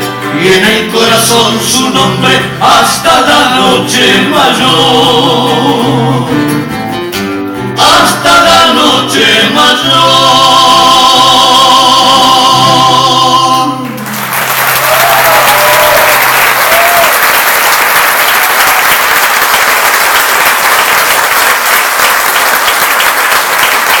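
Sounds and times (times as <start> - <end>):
men singing a chord: 0.3 - 6.4, 7.8 - 14.0
audience applauding: 13.8 - 24.0.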